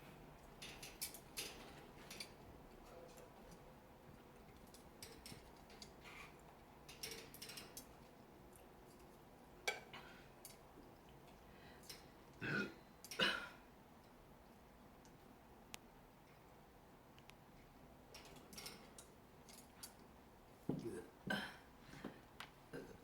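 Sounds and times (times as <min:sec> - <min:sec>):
woman burping: 0:12.4 - 0:13.6.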